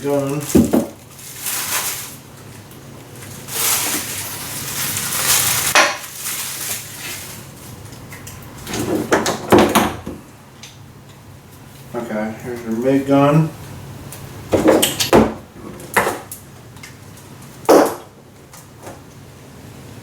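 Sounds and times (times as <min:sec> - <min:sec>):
packaging rustling: 0:00.0 - 0:08.0.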